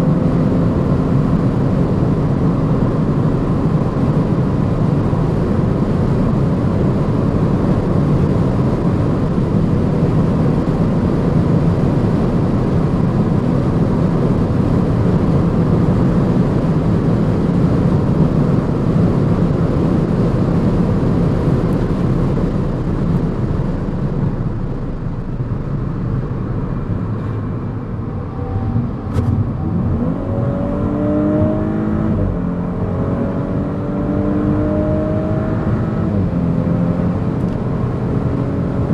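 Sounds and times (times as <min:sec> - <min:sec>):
car engine accelerating: 0:00.0 - 0:38.9
wind rush: 0:12.4 - 0:33.6.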